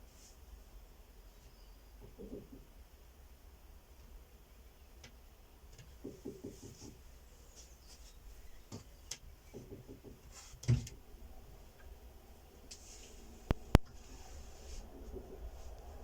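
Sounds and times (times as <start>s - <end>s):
small rustles: 5.8s - 16.0s.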